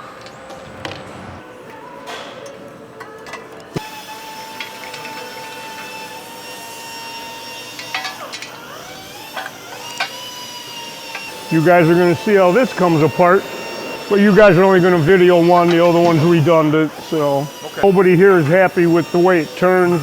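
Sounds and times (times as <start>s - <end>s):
steady high hum: 7.8s - 20.0s.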